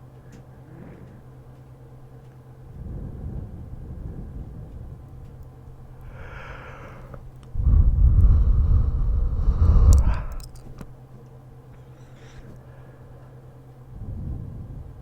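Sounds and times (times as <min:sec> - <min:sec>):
breath blowing onto microphone: 0:06.0 - 0:10.8
small mouth clicks: 0:09.4 - 0:10.9.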